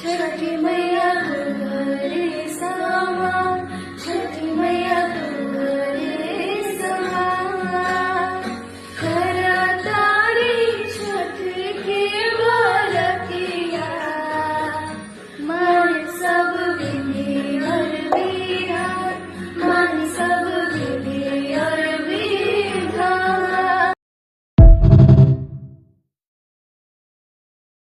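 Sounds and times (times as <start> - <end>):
woman singing devotional folk song: 0.0 - 24.0
musical accompaniment: 18.0 - 19.1, 24.6 - 25.8.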